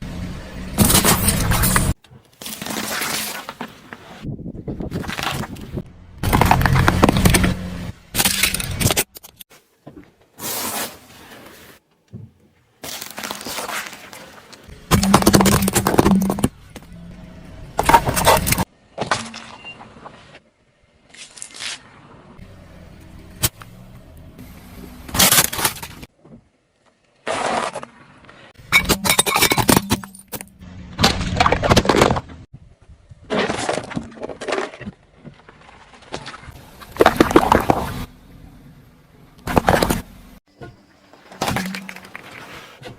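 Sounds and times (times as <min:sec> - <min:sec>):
car engine humming: 0:00.0 - 0:02.0, 0:22.4 - 0:25.4, 0:36.6 - 0:42.3
tyre crushing brittle objects: 0:00.8 - 0:04.0, 0:12.8 - 0:16.5, 0:25.1 - 0:26.1, 0:33.3 - 0:38.0
objects crunching under car tyre: 0:00.8 - 0:11.7, 0:12.8 - 0:17.2, 0:17.8 - 0:20.4, 0:25.1 - 0:32.5, 0:33.1 - 0:38.1, 0:39.4 - 0:42.9.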